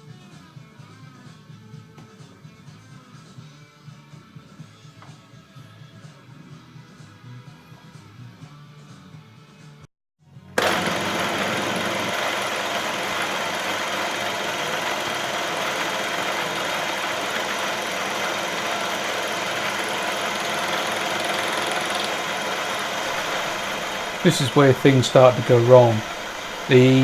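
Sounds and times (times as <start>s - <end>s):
milling machine cutting metal: 10.6s - 27.0s.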